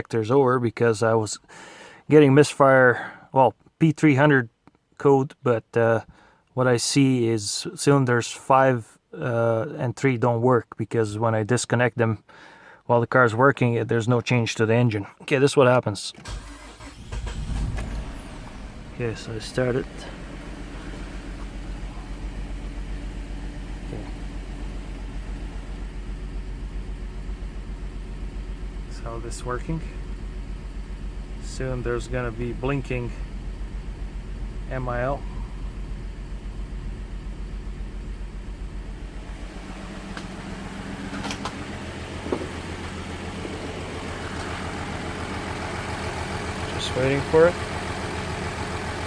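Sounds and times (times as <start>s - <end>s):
car engine idling with misfire: 16.2s - 49.0s.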